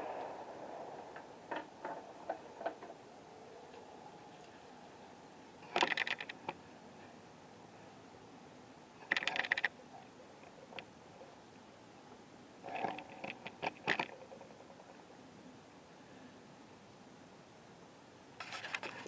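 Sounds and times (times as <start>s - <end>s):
small objects clicking and rattling: 5.7s - 6.5s, 9.0s - 9.7s, 12.7s - 15.0s.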